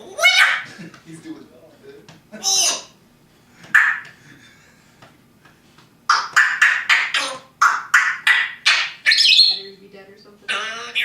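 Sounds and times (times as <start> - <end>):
parrot squawking: 0.0 - 0.7, 2.4 - 3.0, 3.7 - 4.2, 6.1 - 9.8, 10.4 - 11.0.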